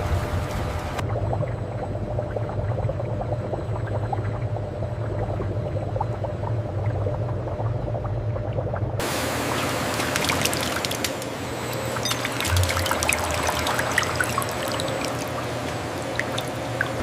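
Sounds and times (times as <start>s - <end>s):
factory machinery hum: 0.0s - 17.0s
rush of pouring water: 9.0s - 11.3s, 11.9s - 17.0s.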